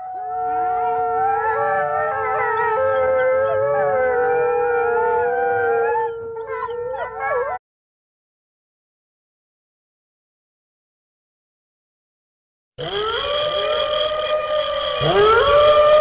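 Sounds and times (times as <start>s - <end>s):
wolves howling: 0.0s - 7.6s, 12.8s - 16.0s.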